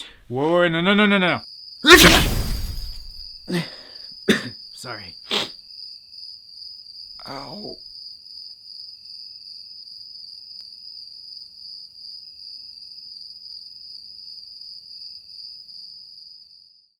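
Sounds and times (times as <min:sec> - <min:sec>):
high-pitched insect trill: 0:01.4 - 0:03.4, 0:04.9 - 0:16.8.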